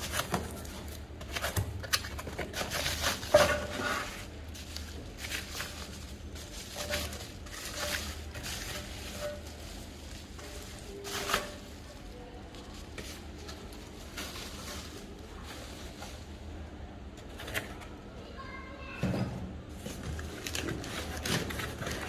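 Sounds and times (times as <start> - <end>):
packaging rustling: 0.0 - 16.2.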